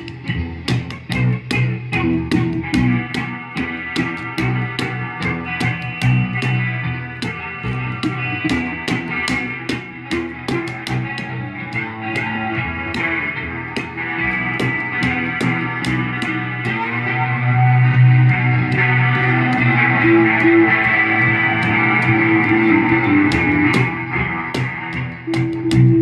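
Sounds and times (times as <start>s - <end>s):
bass line: 0.0s - 26.0s
electric guitar: 0.0s - 26.0s.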